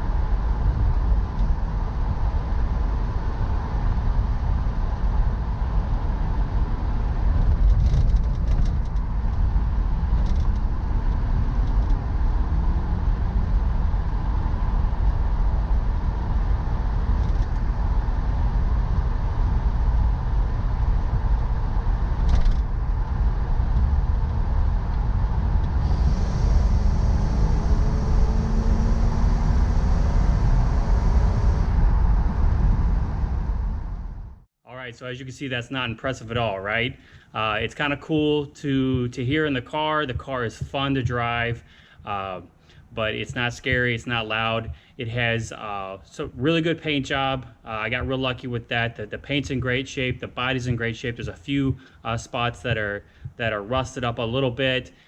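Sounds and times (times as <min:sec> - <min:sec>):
car engine rumbling: 0:00.0 - 0:34.5
road noise: 0:00.0 - 0:34.5.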